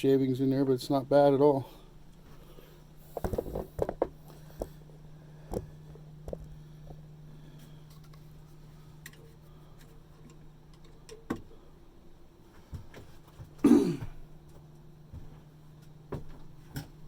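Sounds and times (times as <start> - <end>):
steady low hum: 0.0 - 17.0
man clearing throat: 13.6 - 14.2.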